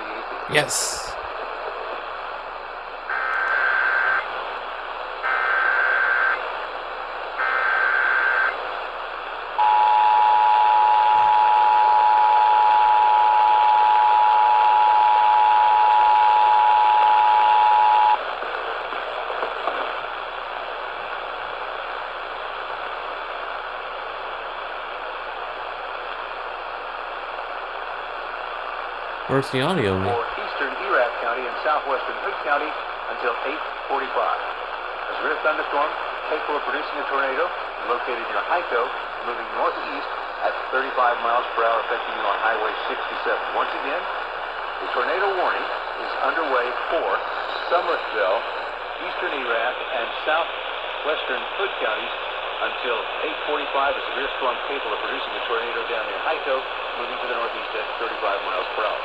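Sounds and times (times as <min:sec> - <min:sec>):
radio hiss: 0:00.5 - 0:01.2.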